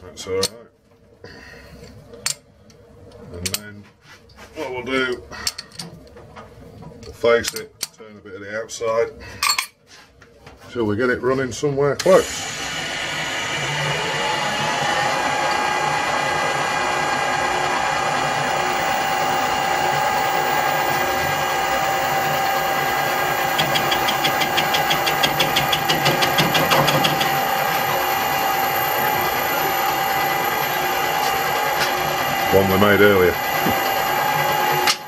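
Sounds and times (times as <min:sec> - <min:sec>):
metal lathe whining: 0:12.1 - 0:35.0.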